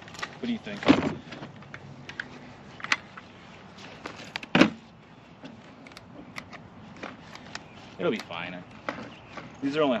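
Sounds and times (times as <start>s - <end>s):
light clicks of gear handled: 5.4s - 10.0s.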